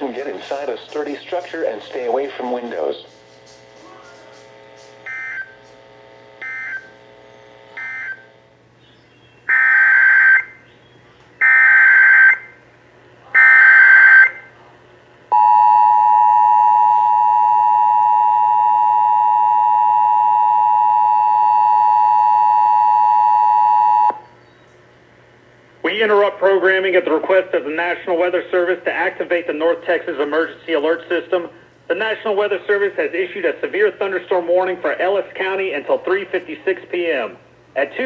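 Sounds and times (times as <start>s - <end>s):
data tone bursts: 5.0s - 5.6s, 6.4s - 8.4s, 9.5s - 10.6s, 15.4s - 24.2s
loud two-tone attention signal: 5.0s - 5.6s, 6.4s - 7.0s, 7.7s - 8.4s, 9.5s - 10.6s, 11.4s - 12.6s, 13.4s - 14.5s, 15.3s - 24.2s.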